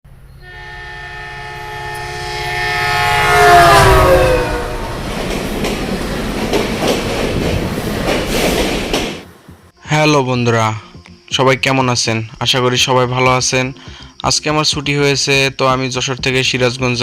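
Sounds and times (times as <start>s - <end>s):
train horn: 0.4s - 5.5s
train carriages rumbling: 1.4s - 9.3s
wheel clacks on rail joints: 5.0s - 9.2s.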